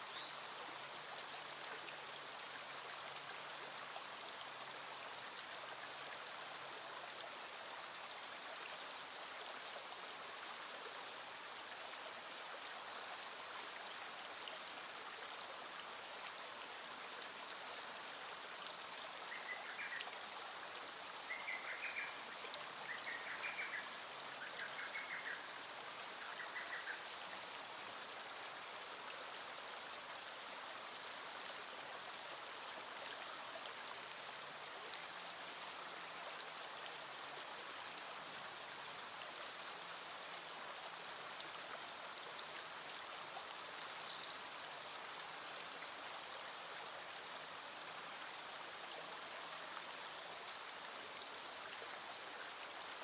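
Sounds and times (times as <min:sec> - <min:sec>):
light rain falling: 0:00.0 - 0:53.0
stream flowing: 0:00.0 - 0:53.0.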